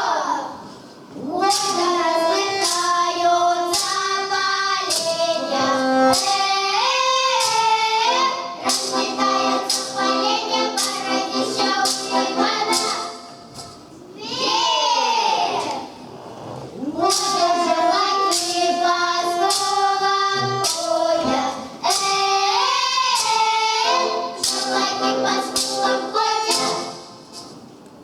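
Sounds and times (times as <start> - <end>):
group singing folk song: 0.0 - 13.6, 16.4 - 27.4
sharp tap beat: 2.6 - 3.0, 4.9 - 5.2, 8.7 - 13.7.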